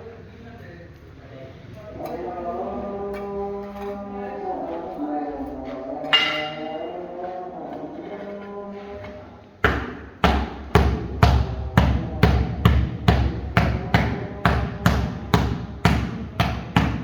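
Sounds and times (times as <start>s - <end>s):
hammering: 6.0s - 7.2s, 9.6s - 17.0s.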